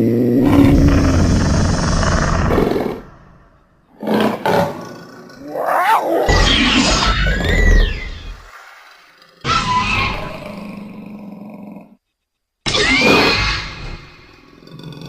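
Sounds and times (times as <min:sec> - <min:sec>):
creature growl: 0:00.0 - 0:07.7
low creature roar: 0:00.0 - 0:08.1
screeching creature call: 0:05.2 - 0:11.2, 0:12.7 - 0:14.2.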